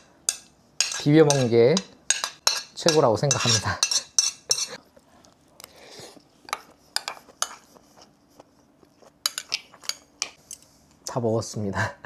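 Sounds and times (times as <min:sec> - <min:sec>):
cutlery clinking against dish: 0:00.3 - 0:04.8, 0:09.3 - 0:10.4
soft cutlery scrape: 0:02.1 - 0:04.8, 0:06.1 - 0:10.7.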